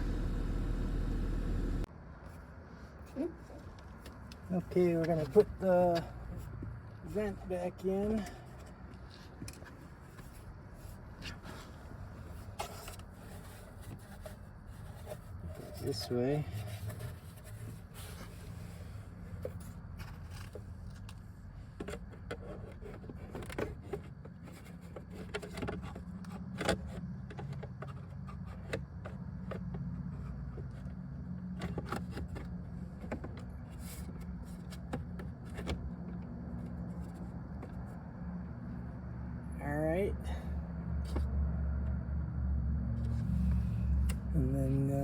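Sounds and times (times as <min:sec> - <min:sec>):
steady low hum: 0:00.0 - 0:01.9.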